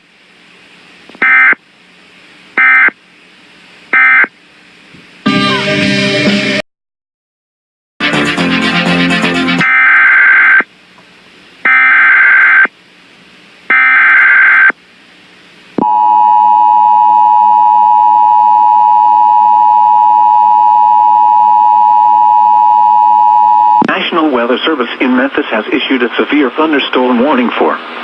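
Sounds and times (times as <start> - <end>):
electronic data bursts: 4.0 - 4.3
steady electronic attention tone: 4.0 - 4.3.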